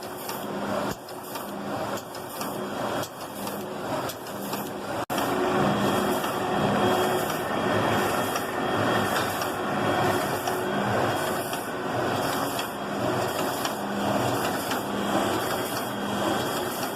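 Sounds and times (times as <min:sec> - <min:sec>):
bag sealing machine running: 0:00.0 - 0:16.9.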